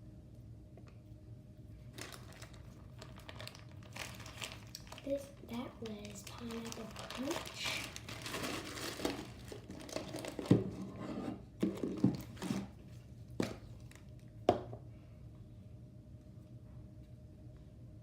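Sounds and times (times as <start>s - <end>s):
crackly crinkling: 1.8s - 10.8s, 11.9s - 14.4s.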